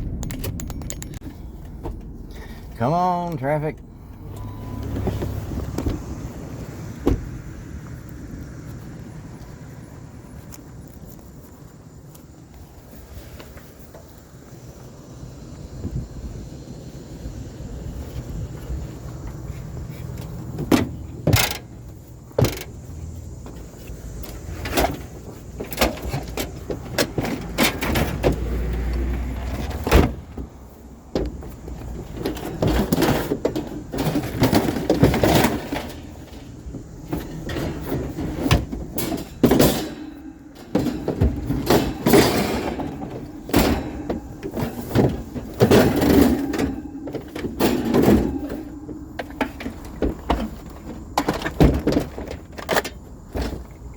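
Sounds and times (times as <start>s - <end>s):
knocks bangs and clattering scrapes: 19.1s - 53.9s.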